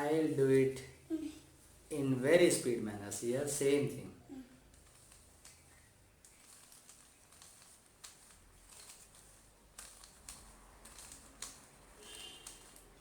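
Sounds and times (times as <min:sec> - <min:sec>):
plastic puzzle cube clicking: 0:06.2 - 0:13.0.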